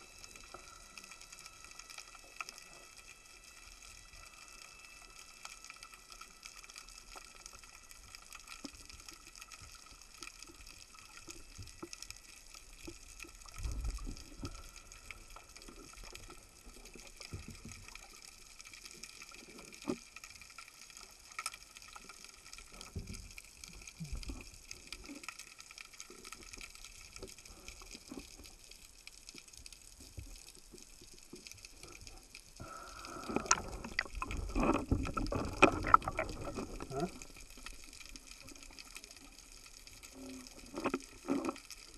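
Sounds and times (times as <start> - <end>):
faint underwater sound: 0.0 - 41.9
rushing water: 32.6 - 39.3
light clicks and soft knocks: 33.3 - 41.9.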